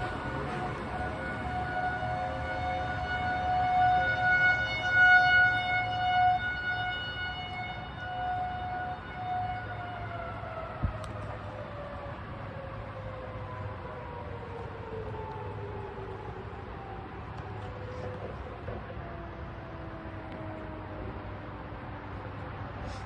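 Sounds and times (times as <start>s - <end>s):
warning siren wailing: 0.0s - 23.0s.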